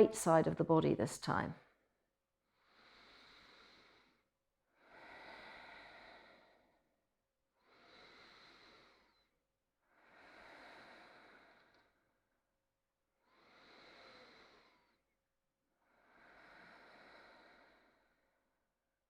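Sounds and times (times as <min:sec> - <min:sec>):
slow deep breathing: 0:02.5 - 0:07.0, 0:07.6 - 0:12.2, 0:13.2 - 0:15.1, 0:15.8 - 0:18.6.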